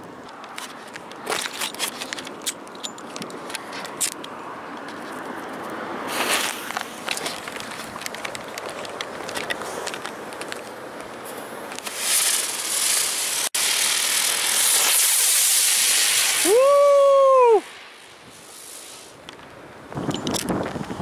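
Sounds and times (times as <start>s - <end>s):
firework hissing spray of sparks: 6.1s - 6.7s, 11.8s - 19.3s
firework crackling: 6.1s - 9.9s, 11.2s - 19.3s
firework whistle: 11.8s - 19.2s.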